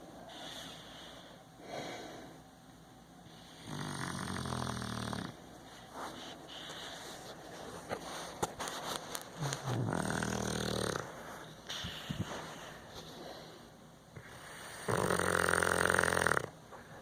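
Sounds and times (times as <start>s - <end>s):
soft breath: 0.0s - 2.5s, 5.6s - 9.8s, 11.0s - 14.9s
person snoring: 3.6s - 5.4s, 9.4s - 11.2s, 14.6s - 16.6s.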